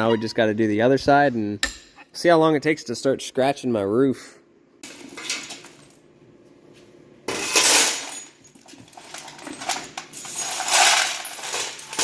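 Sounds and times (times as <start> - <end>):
metal tools clinking and rattling: 4.8 - 6.0, 7.3 - 12.0.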